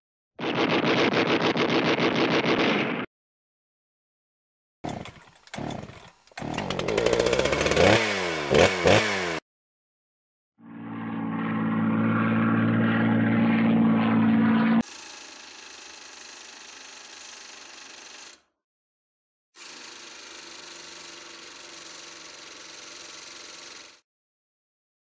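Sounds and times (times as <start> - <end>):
motor revving: 4.9 - 9.4
steady engine drone: 10.6 - 14.9.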